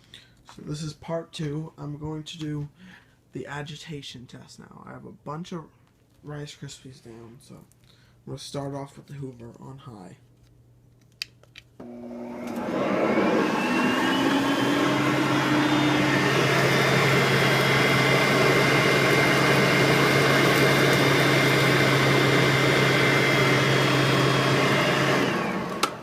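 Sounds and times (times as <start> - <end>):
vacuum cleaner running: 11.8 - 26.0.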